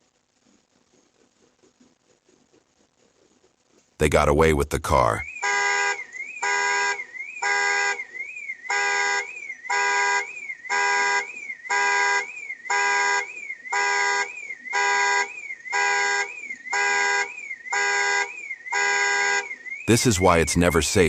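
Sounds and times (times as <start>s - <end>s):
car alarm horn blasts: 5.2s - 20.0s.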